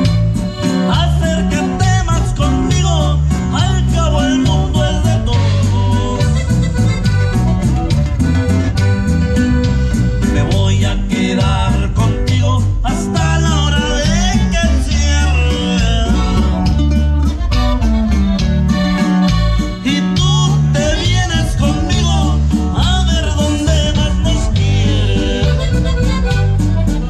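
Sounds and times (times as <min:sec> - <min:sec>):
person singing: 0:00.0 - 0:06.6, 0:10.2 - 0:16.7, 0:19.8 - 0:26.3
bass and drum beat: 0:00.0 - 0:27.0
plucked strings: 0:00.0 - 0:27.0.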